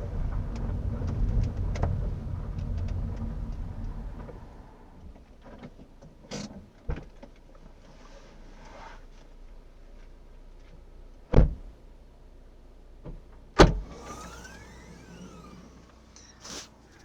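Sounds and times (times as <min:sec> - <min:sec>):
knocks from a car: 0:11.3 - 0:11.7.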